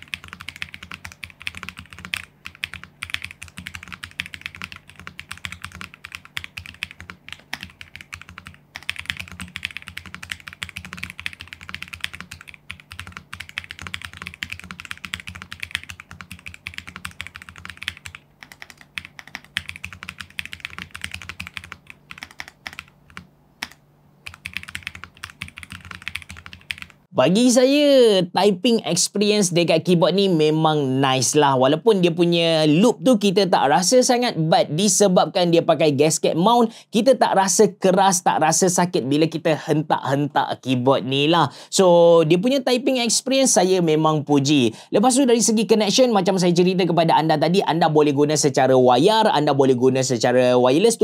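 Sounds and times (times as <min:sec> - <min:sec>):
mechanical keyboard typing: 0:00.0 - 0:27.0.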